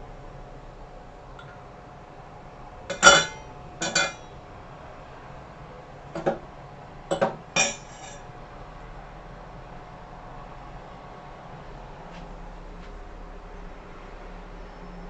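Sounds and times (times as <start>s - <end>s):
crockery clinking: 2.9s - 4.3s, 7.1s - 8.2s.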